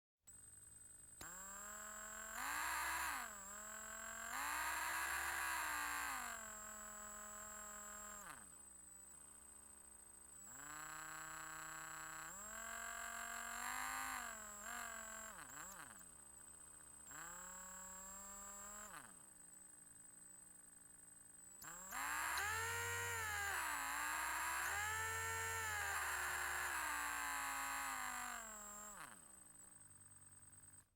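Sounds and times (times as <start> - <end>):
electric drill whining: 1.2 - 8.5, 10.4 - 16.1, 17.0 - 19.2, 21.6 - 30.5.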